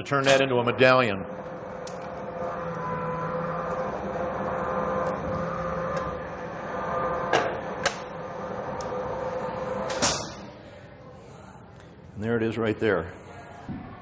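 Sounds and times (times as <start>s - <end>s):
coin press humming: 1.3s - 10.4s.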